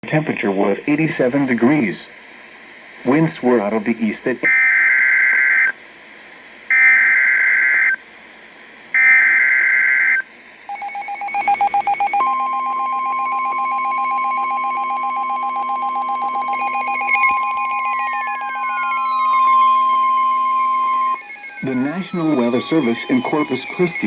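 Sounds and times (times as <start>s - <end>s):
digital data screeches: 10.7s - 24.0s
pulsing electronic alarm beep: 10.7s - 24.0s
steady warning alarm tone: 10.7s - 24.0s.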